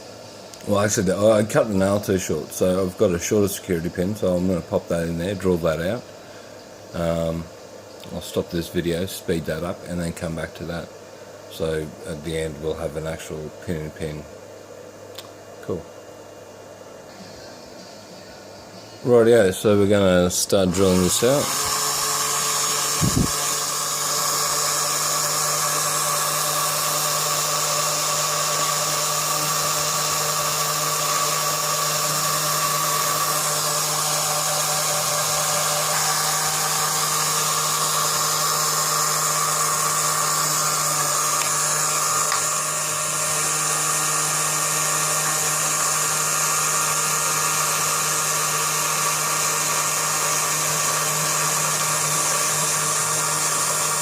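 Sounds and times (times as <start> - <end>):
drill motor whining: 20.1 - 54.0.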